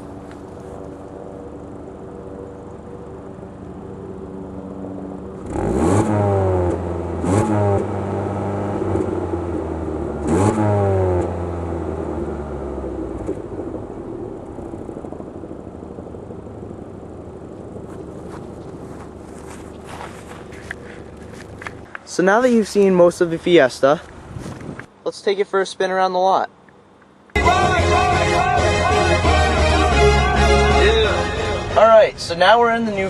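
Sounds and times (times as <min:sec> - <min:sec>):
car engine idling and revving: 0:00.0 - 0:22.1, 0:29.2 - 0:33.0.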